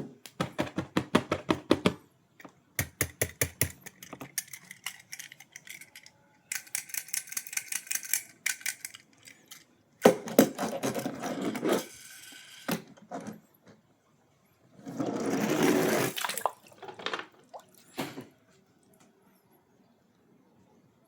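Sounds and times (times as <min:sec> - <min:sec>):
packaging clicks: 0:02.8 - 0:09.6.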